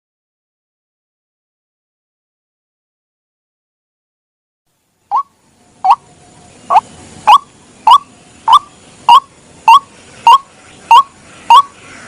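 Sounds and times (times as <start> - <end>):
waterhen calling: 5.1 - 12.0.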